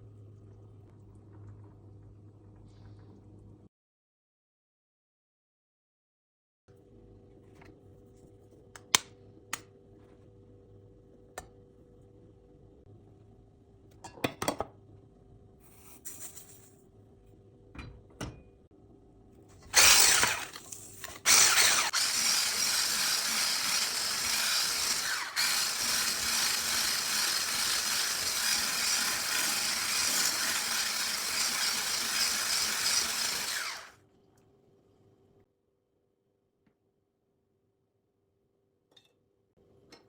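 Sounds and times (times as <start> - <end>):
electric kitchen mixer running: 19.8 - 20.6, 21.2 - 34.0.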